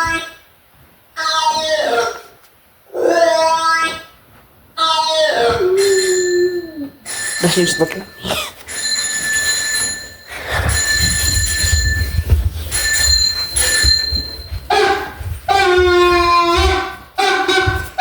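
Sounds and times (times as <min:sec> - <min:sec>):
high bell-like ringing tone: 0:05.8 - 0:15.2.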